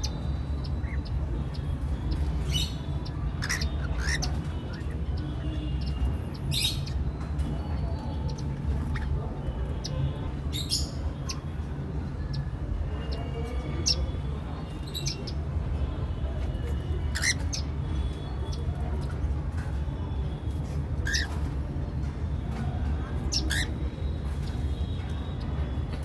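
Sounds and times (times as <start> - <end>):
cockatiels chirping and squawking: 0.0 - 10.0, 16.7 - 19.2, 20.6 - 21.6, 23.2 - 25.4.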